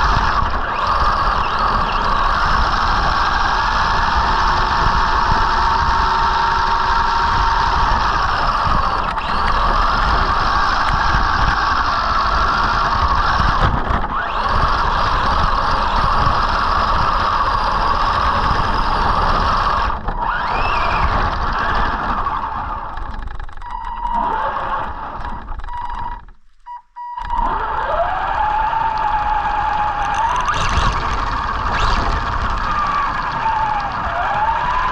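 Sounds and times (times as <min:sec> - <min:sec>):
rc truck motor whining: 0:00.0 - 0:26.3, 0:27.1 - 0:34.9
low rough rumble: 0:28.9 - 0:34.9.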